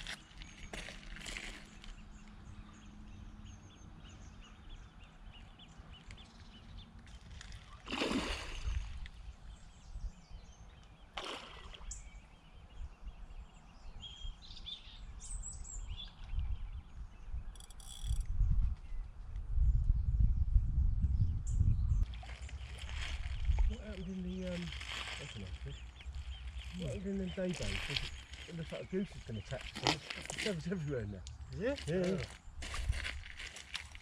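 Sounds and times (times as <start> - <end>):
birds calling: 0.0 - 18.2, 21.9 - 34.0
wind rumbling on microphone: 6.5 - 11.1, 11.8 - 30.6, 31.2 - 34.0.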